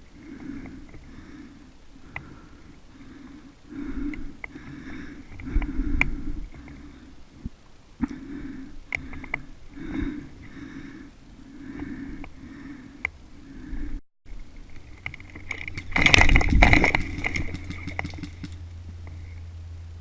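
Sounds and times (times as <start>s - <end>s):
person breathing heavily: 0.0s - 14.0s
gear clicking and rustling: 14.4s - 19.4s.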